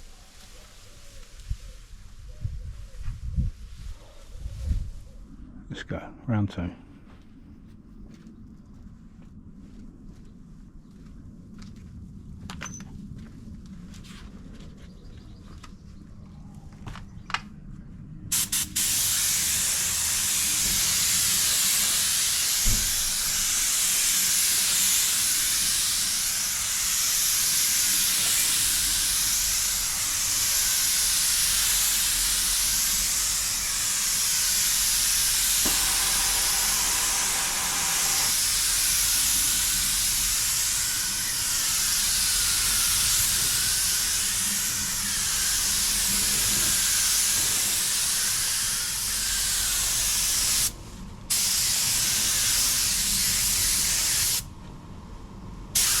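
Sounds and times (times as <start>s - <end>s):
paint spray gun hissing: 18.3s - 54.5s, 55.8s - 56.0s.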